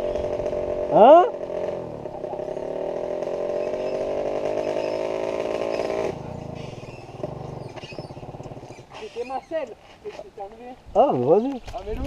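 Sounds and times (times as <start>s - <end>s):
motorcycle engine running: 0.0s - 9.0s.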